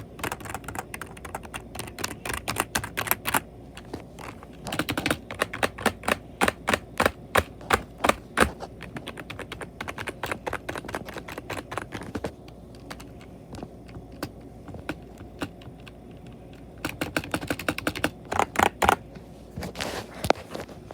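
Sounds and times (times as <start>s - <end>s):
keyboard keystrokes: 0.0s - 19.0s.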